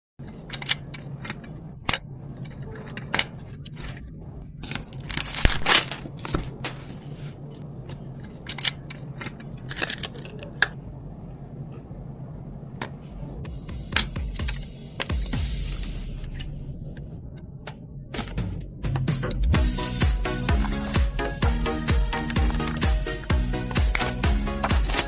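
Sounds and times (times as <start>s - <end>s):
steady low hum: 0.2s - 25.0s
rustling and scraping of packaging: 2.5s - 8.4s.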